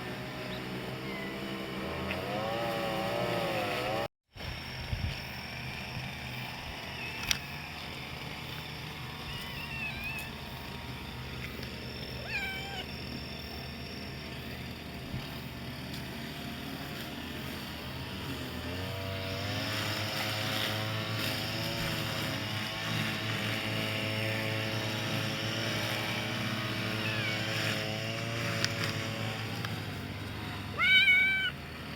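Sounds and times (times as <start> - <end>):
engine-like drone: 0.0 - 31.9
kitten meowing faintly: 9.3 - 10.4, 12.2 - 12.9, 26.9 - 27.8, 30.8 - 31.6.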